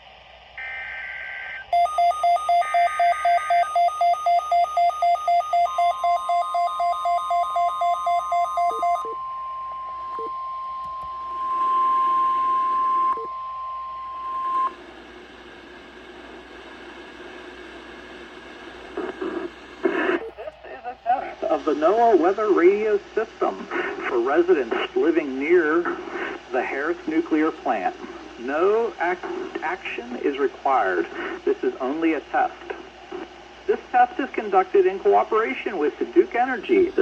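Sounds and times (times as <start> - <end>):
low radio hiss: 0.0 - 37.0
steady warning alarm tone: 0.6 - 11.0
rapid electronic beeping: 1.7 - 9.1.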